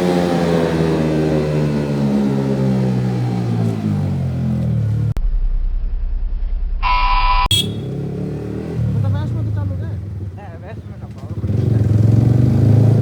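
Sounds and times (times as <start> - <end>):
low hum: 5.1 - 8.2
short pitched tone: 6.8 - 8.0
motorcycle engine revs dropping: 6.8 - 9.2.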